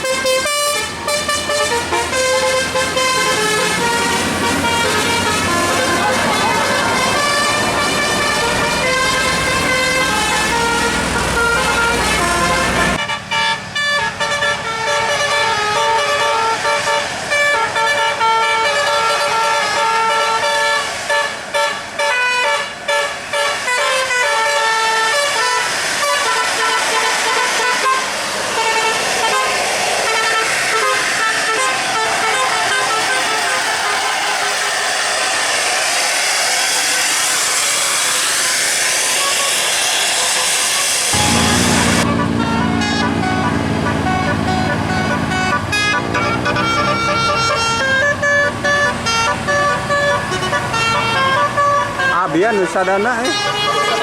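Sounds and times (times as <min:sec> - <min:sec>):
musical bus air horn: 0:00.0 - 0:35.4, 0:37.0 - 0:54.0
low rumble: 0:41.2 - 0:46.8.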